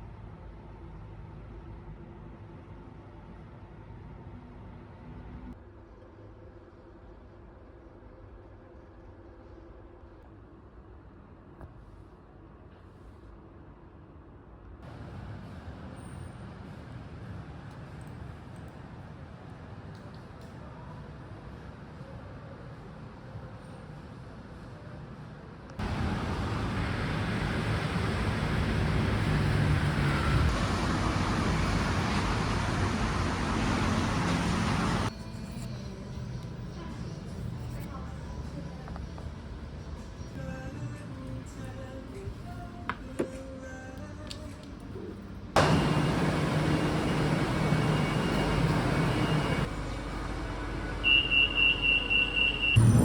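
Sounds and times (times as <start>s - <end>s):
road traffic: 14.8s - 20.3s, 25.8s - 35.2s, 44.8s - 53.0s
vehicle rushing with low rumble: 25.8s - 35.1s, 52.7s - 53.0s.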